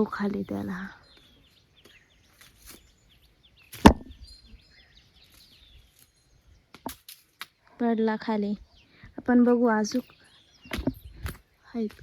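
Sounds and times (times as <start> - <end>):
leaves rustling: 0.0 - 7.5
small birds chirping: 0.0 - 12.0
knocks on tree: 3.8 - 4.1.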